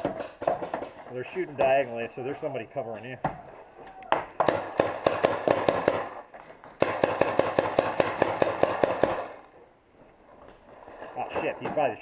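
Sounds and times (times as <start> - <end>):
paintball marker firing rapidly: 4.4 - 9.4.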